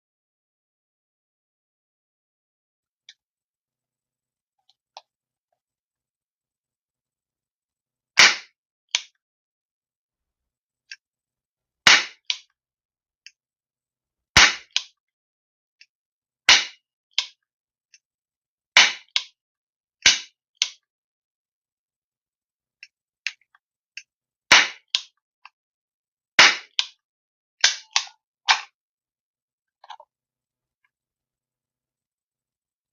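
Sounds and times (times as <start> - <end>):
toy cap pistol shots: 8.2 - 9.1, 11.9 - 12.5, 14.4 - 14.9, 24.5 - 25.1, 26.4 - 27.0, 27.6 - 28.7.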